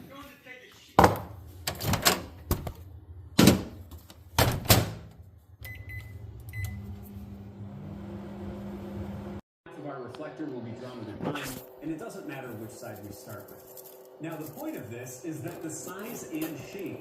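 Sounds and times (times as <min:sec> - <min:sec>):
microwave oven humming: 0:01.3 - 0:09.4.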